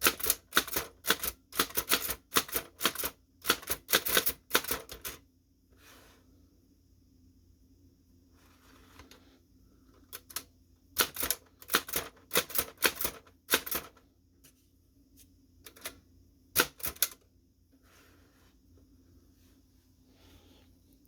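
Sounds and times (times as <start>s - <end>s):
typewriter keys clacking: 0.0s - 5.2s, 11.0s - 13.9s.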